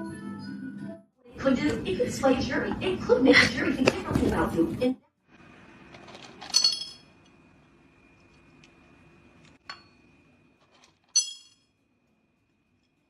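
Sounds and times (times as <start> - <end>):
bright ringing clink: 11.2 - 11.7.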